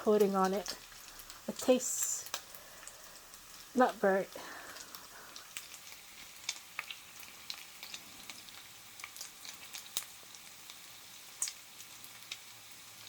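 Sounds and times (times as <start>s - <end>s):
fat popping and crackling: 0.0s - 12.6s
sausages sizzling in oil: 0.0s - 13.0s.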